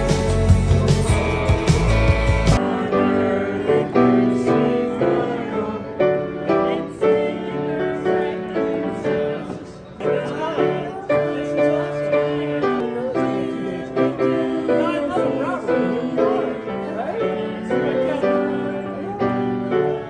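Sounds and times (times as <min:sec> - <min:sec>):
piano music: 0:00.0 - 0:20.0.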